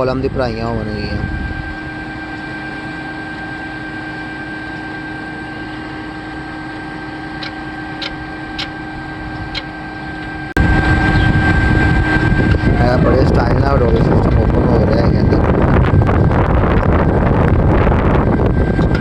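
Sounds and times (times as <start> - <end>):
truck engine and hydraulics hum: 0.0 - 19.0
loud rushing noise: 10.6 - 18.8.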